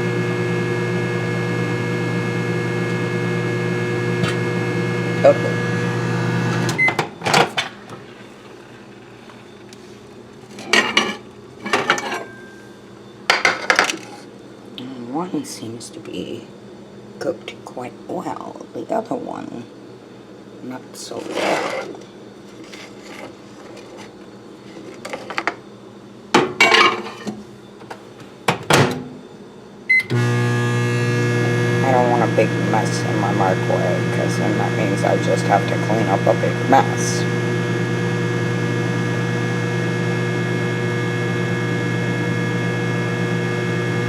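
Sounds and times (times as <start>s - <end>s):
microwave oven humming: 0.0s - 14.7s, 25.4s - 44.0s.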